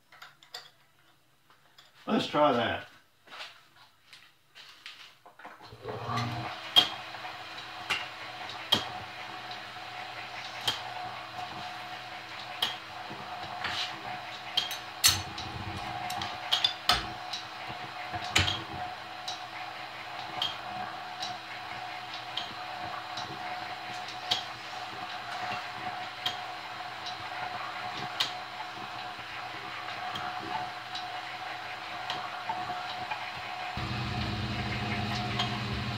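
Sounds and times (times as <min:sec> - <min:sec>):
drill press motor humming: 0:33.8 - 0:35.9.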